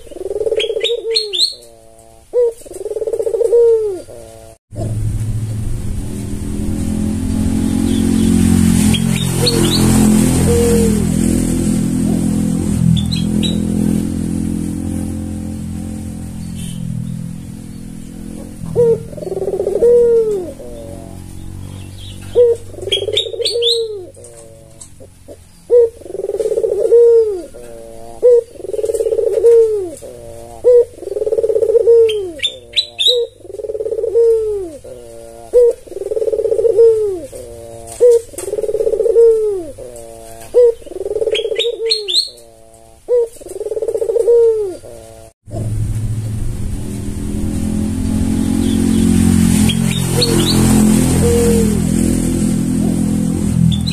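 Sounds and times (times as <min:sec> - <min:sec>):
dove cooing: 0:00.0 - 0:05.0, 0:07.7 - 0:45.7, 0:47.7 - 0:53.9
high rising chirps: 0:12.8 - 0:15.6.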